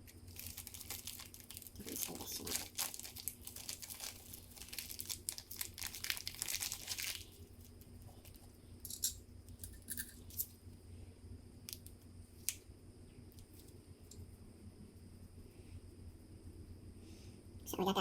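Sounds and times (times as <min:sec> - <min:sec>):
crinkling handling noise: 0:00.0 - 0:10.7
low steady hum: 0:00.0 - 0:18.0.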